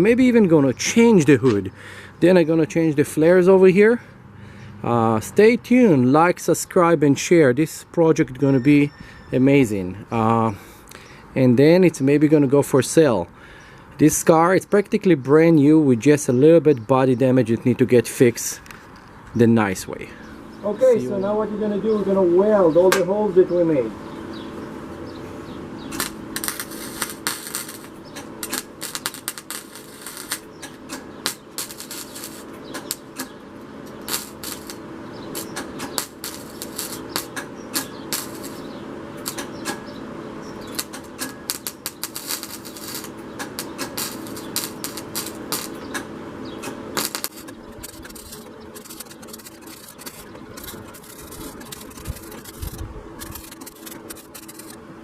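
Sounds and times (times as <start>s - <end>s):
steady hum: 17.6s - 55.0s
welder crackling clicks: 25.9s - 39.9s, 40.6s - 54.8s.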